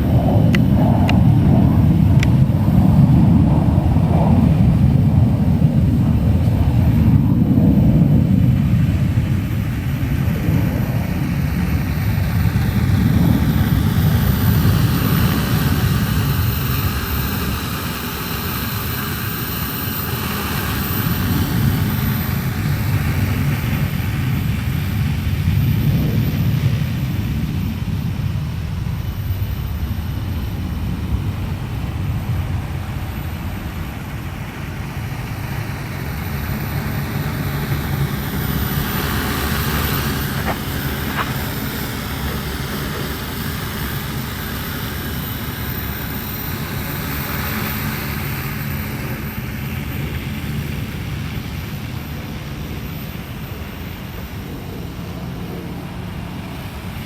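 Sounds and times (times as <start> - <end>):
low rumble: 0.0 - 44.9
drone rotors whirring: 0.0 - 57.0.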